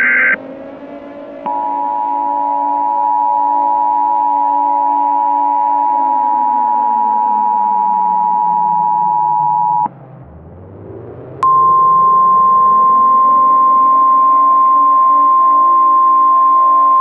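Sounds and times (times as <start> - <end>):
loud steady electronic beep: 0.0 - 0.4, 1.4 - 9.9, 11.4 - 17.0
rising electronic sweep: 0.0 - 2.8, 6.4 - 15.7
higher steady tone: 0.0 - 9.9, 11.4 - 17.0
deep drone sliding down: 5.2 - 15.8.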